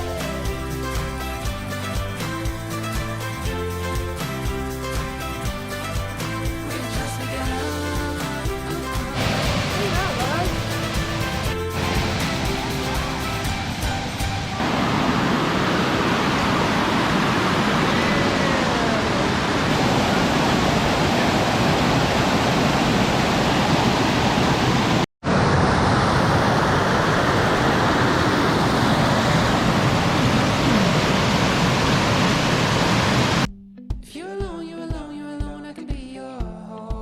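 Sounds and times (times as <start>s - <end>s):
waterfall roaring: 9.2s - 33.5s.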